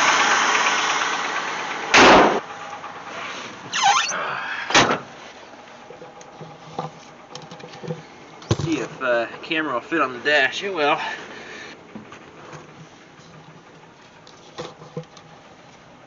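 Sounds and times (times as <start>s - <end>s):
car engine idling: 0.0s - 16.0s
squeaky door hinge: 3.7s - 4.2s.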